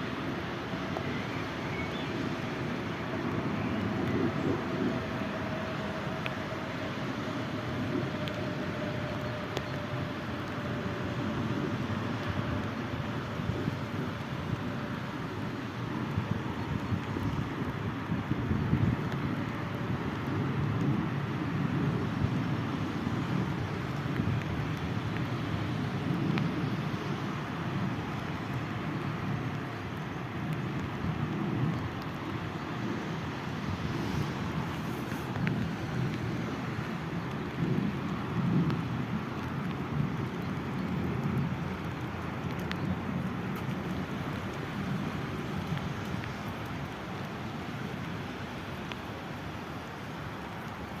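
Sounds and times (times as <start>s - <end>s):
steady rain: 0.0s - 51.0s
wind buffeting microphone: 0.1s - 51.0s.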